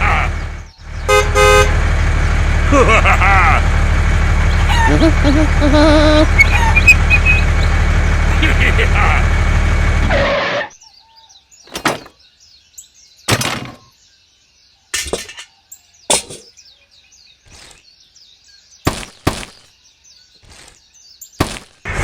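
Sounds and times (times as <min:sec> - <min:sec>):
faint birds chirping: 0:00.0 - 0:09.2, 0:10.7 - 0:21.9
short knocks or scrapes: 0:11.7 - 0:12.1.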